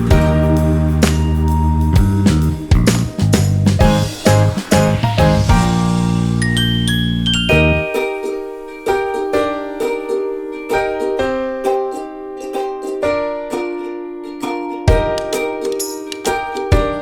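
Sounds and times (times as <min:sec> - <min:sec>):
plucked ukulele music: 0:00.0 - 0:17.0.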